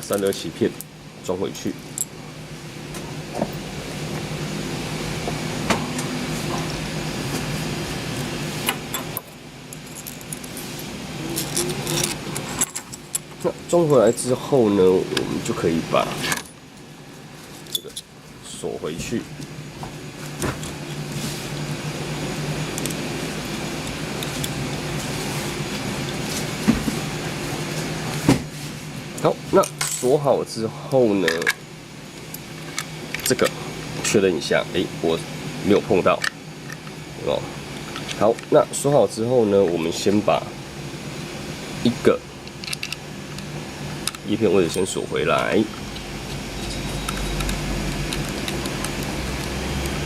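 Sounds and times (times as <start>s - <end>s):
low machine hum: 0.0s - 50.0s
small metal parts clicking: 42.4s - 43.0s.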